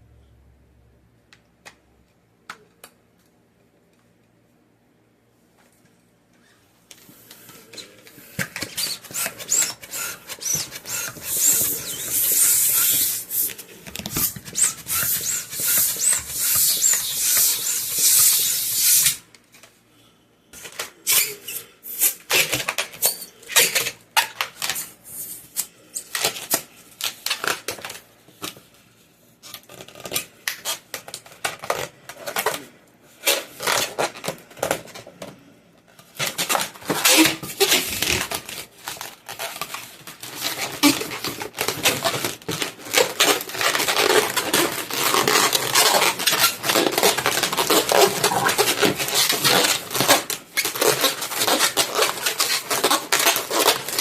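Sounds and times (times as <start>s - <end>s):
balloon rustling with clicks: 6.4s - 19.8s, 29.4s - 54.0s
balloon squeaks and taps: 7.5s - 19.3s, 20.6s - 28.0s, 33.2s - 35.0s, 36.1s - 54.0s.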